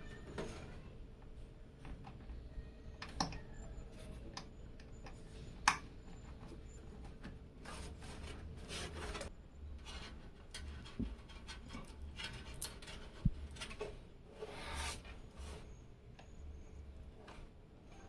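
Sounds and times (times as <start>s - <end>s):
computer parts rubbing and scraping: 7.6s - 15.8s.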